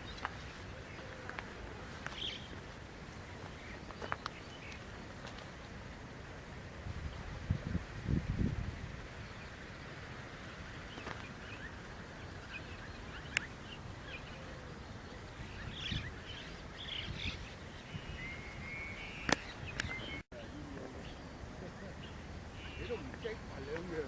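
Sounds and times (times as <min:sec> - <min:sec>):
outdoor background hiss: 0:00.0 - 0:24.0
small birds chirping: 0:00.0 - 0:24.0.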